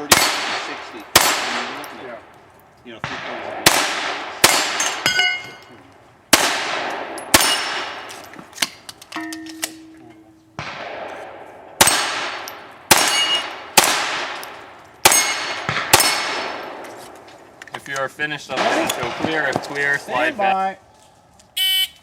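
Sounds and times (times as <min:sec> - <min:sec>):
rifle shots: 0:00.0 - 0:02.3, 0:03.0 - 0:05.7, 0:06.3 - 0:08.3, 0:10.6 - 0:17.6, 0:18.5 - 0:20.3
steel targets clanging: 0:04.4 - 0:05.9, 0:06.8 - 0:10.9, 0:11.8 - 0:13.6, 0:14.2 - 0:17.1.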